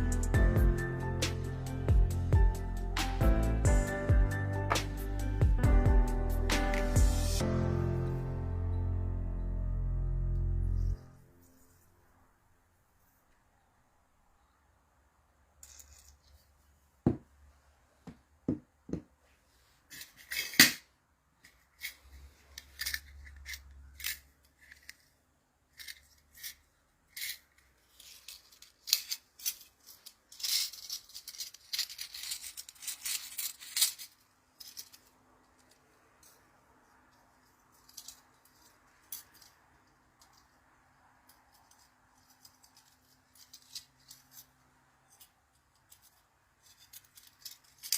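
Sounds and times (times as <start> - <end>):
metal parts and tools clicking: 15.6 - 16.6, 19.9 - 47.9.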